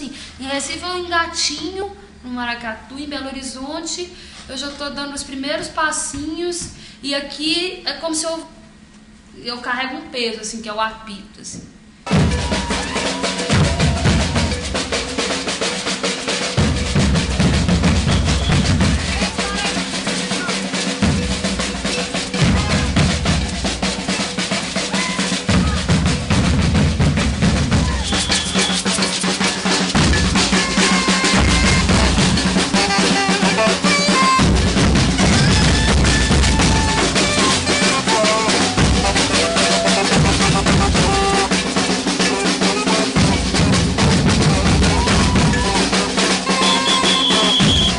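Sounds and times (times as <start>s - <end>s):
fast snare drum strokes: 12.0s - 47.9s
deep bass drums: 12.1s - 15.4s, 16.6s - 46.3s, 47.2s - 47.9s.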